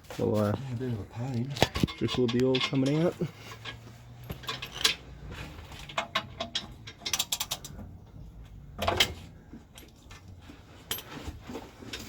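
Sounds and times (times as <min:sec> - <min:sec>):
metal clinks: 0:01.7 - 0:07.8.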